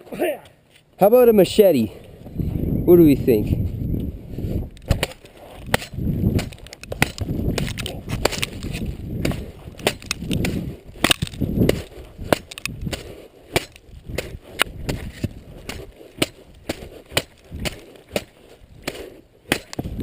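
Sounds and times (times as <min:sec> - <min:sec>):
machete chopping packed snow: 0:04.9 - 0:20.0
heavy low thuds: 0:05.7 - 0:20.0.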